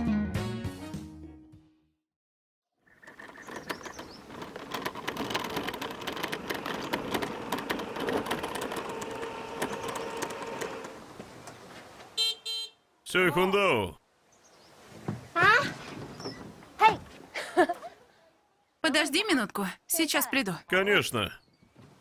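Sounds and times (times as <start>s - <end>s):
rapid clicking and clatter: 2.9s - 10.9s.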